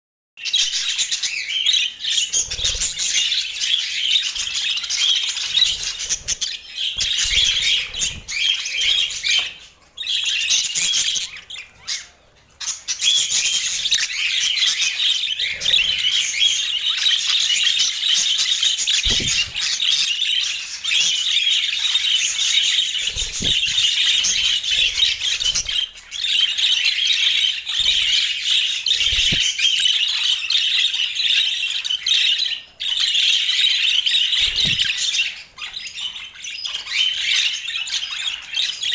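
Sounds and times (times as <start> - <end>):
budgerigars chattering and warbling: 0.5 - 38.9
soft thumps: 19.1 - 19.6.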